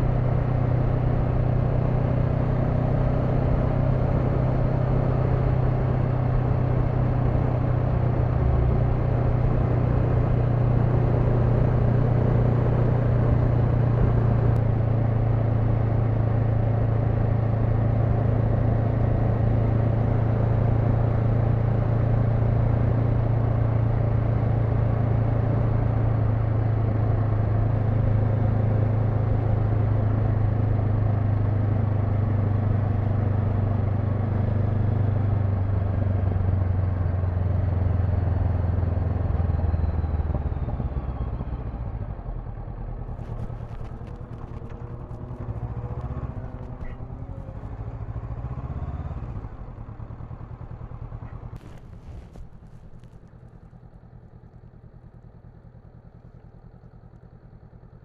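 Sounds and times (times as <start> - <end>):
motorcycle engine cruising: 0.0 - 58.0.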